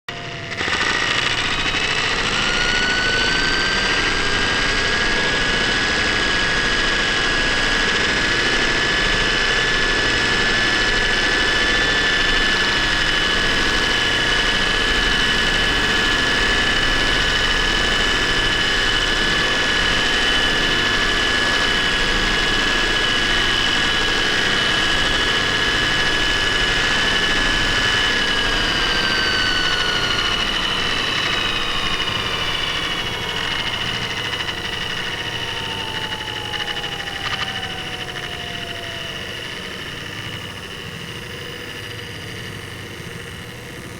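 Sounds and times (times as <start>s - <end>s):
high whining tones: 0.1s - 6.2s, 25.0s - 43.9s
mechanical grinding drone: 0.1s - 43.9s.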